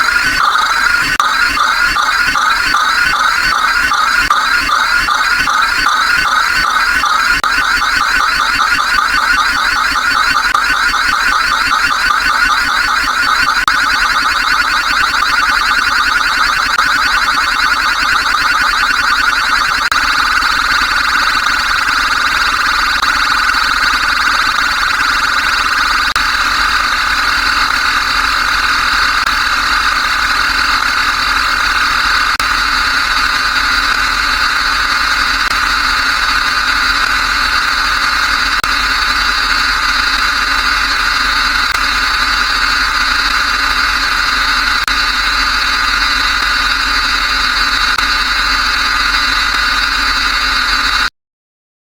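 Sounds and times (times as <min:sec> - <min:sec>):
buzzing electronic beep drone: 0:00.0 - 0:51.1.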